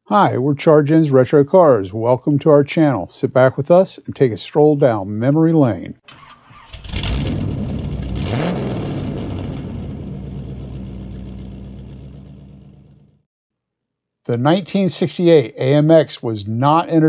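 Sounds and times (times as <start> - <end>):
car engine revving: 6.1 - 13.2.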